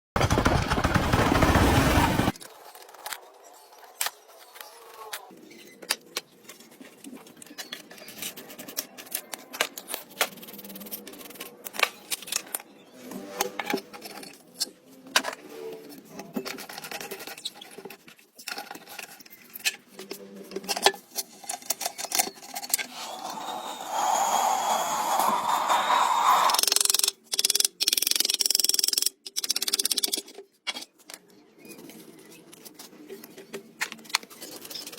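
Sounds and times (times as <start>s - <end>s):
loud rush of noise: 23.0s - 26.6s.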